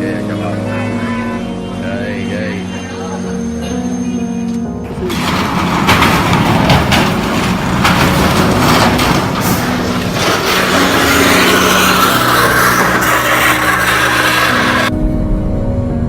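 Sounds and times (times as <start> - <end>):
truck engine droning: 0.0 - 15.0
sharp knocks and rattles: 5.0 - 14.9.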